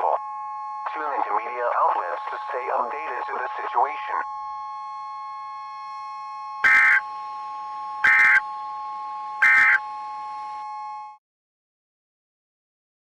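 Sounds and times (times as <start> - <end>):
steady two-note electronic tone: 4.9 - 11.0
buzzy digital data bursts: 6.6 - 7.0, 8.0 - 8.4, 9.4 - 9.8.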